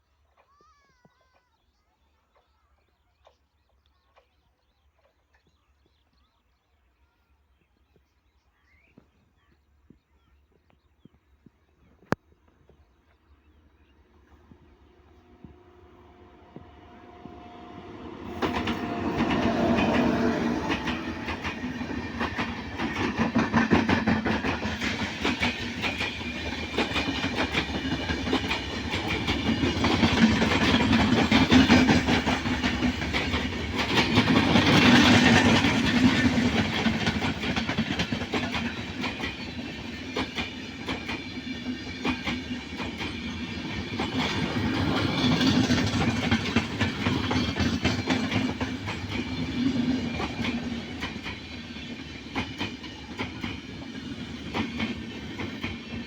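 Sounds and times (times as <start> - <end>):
train wheels clattering on rails: 14.4 - 56.0.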